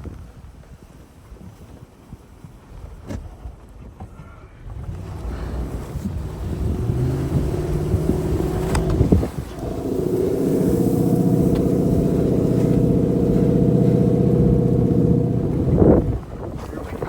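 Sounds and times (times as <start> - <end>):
truck engine under load: 4.6 - 17.0.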